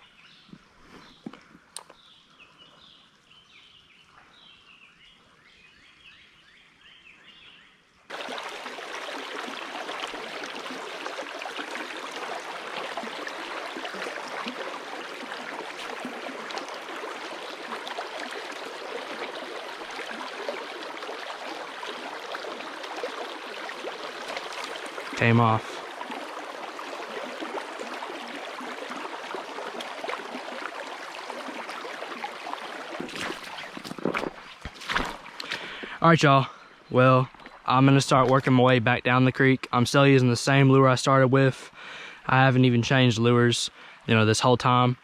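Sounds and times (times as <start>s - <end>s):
creek water flowing: 8.1s - 45.0s.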